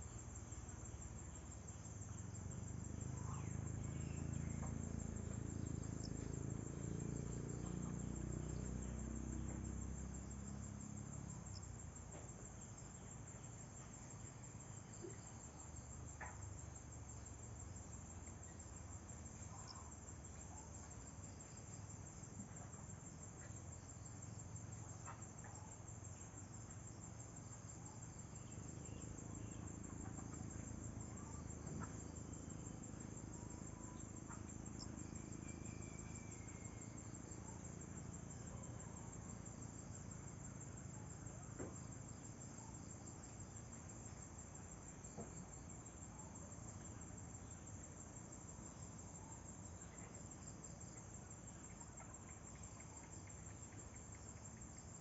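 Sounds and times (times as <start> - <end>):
crickets chirping: 0.0 - 55.0.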